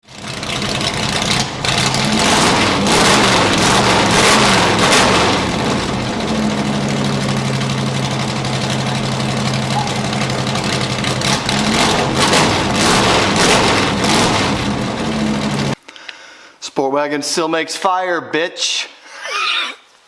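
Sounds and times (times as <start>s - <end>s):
car engine revving and idling: 0.1s - 15.8s.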